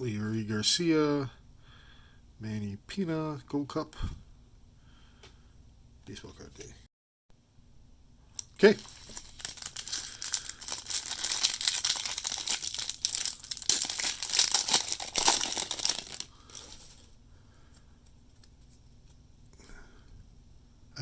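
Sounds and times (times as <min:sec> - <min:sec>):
foil wrapper tearing and crinkling: 0:08.4 - 0:17.1.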